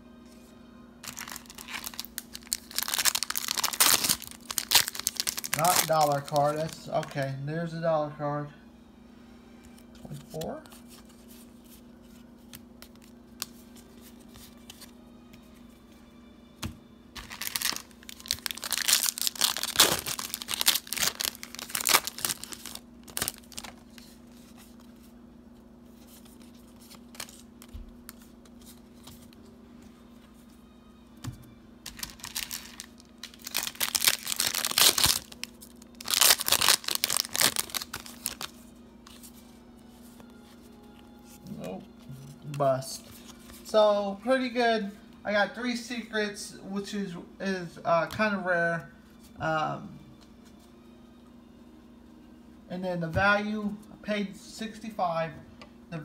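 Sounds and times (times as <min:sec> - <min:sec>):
steady low hum: 0:00.0 - 0:56.0
foil wrappers tearing and crinkling: 0:01.0 - 0:07.1, 0:17.2 - 0:24.8, 0:31.9 - 0:38.6.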